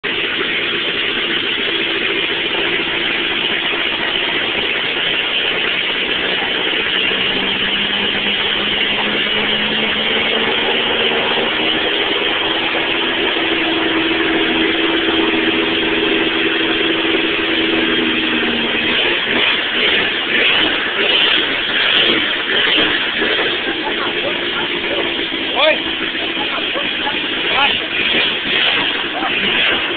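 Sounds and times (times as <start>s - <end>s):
car engine rumbling deep: 0.0s - 29.9s.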